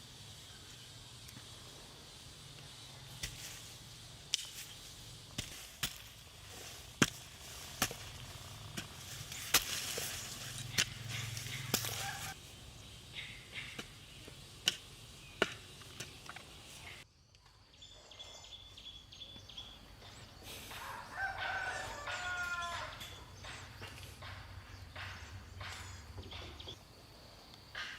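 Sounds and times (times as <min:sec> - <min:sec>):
domestic fowl calling: 0:10.6 - 0:12.4, 0:20.7 - 0:23.2.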